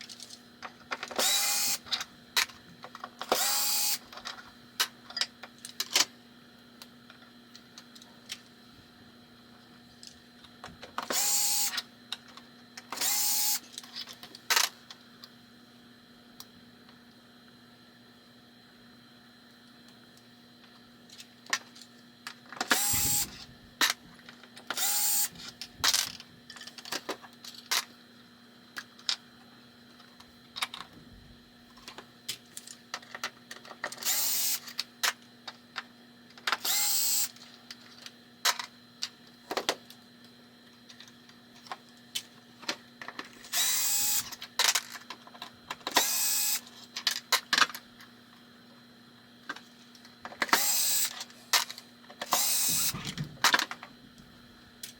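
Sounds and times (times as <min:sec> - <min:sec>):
power drill running: 0:01.2 - 0:01.9, 0:03.3 - 0:04.1, 0:11.1 - 0:11.8, 0:13.0 - 0:13.7, 0:22.7 - 0:23.4, 0:24.7 - 0:25.4, 0:34.0 - 0:34.7, 0:36.6 - 0:37.3, 0:43.5 - 0:44.3, 0:45.9 - 0:46.6, 0:50.6 - 0:51.2, 0:52.2 - 0:53.0.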